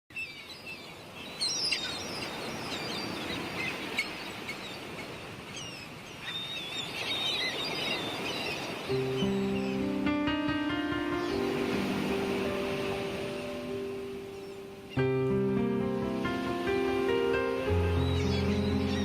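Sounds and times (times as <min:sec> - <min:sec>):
small birds chirping: 0:00.1 - 0:13.3, 0:14.0 - 0:15.1, 0:17.4 - 0:19.0.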